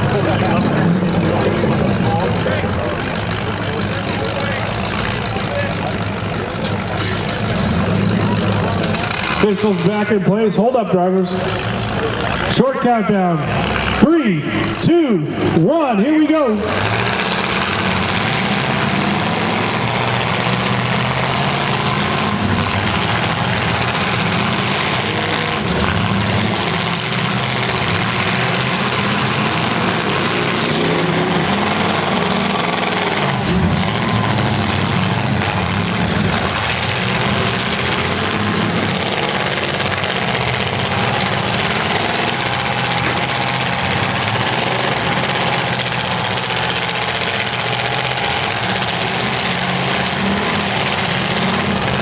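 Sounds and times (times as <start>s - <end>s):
car engines revving: 0.0s - 52.0s.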